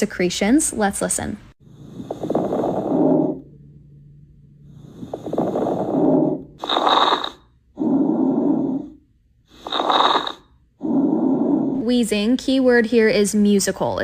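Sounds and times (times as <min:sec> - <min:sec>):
lung crackles: 0:05.0 - 0:08.8, 0:09.6 - 0:11.8.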